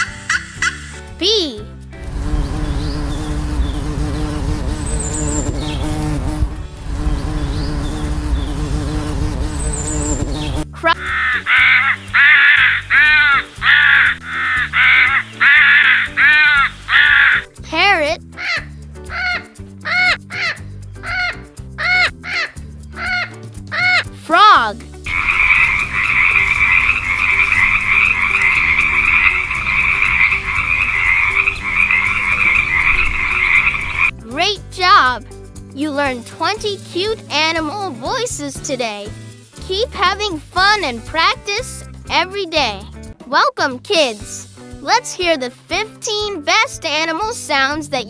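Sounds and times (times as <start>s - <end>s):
backing music track: 0.0s - 48.0s
chorus of frogs croaking: 11.0s - 17.5s, 25.1s - 34.1s
crow cawing: 11.0s - 17.5s, 18.4s - 24.0s, 25.1s - 34.1s.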